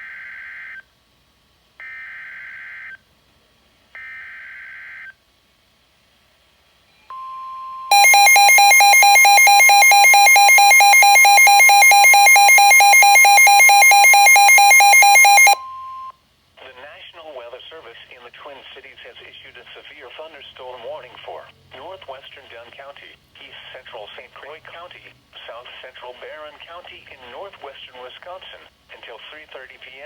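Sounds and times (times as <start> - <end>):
steady attention tone: 7.1 - 16.1
rapidly pulsing alarm tone: 7.9 - 16.1
screeching data burst tones: 7.9 - 16.1.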